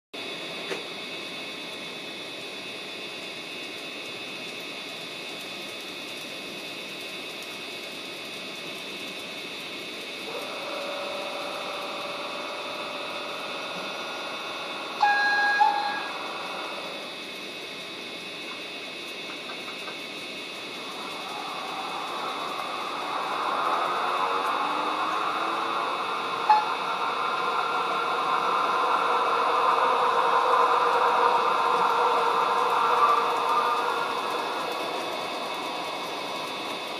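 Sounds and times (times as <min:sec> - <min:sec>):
speaker hiss with high whine: 0:00.2 - 0:36.9
pitched engine-like sound: 0:10.0 - 0:36.9.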